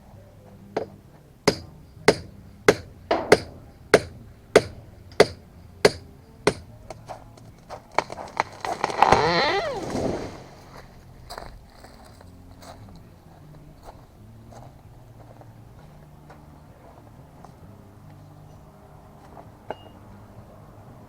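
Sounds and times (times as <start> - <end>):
sharp knocks: 1.5 - 6.7
tree crashing down: 7.9 - 10.9.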